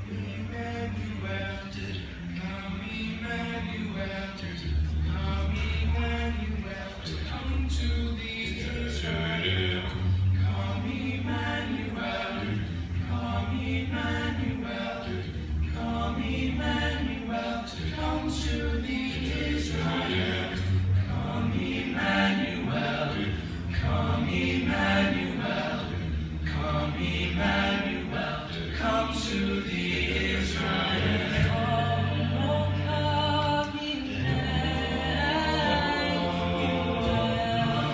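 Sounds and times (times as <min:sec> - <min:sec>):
a cappella group singing: 0:00.0 - 0:37.9.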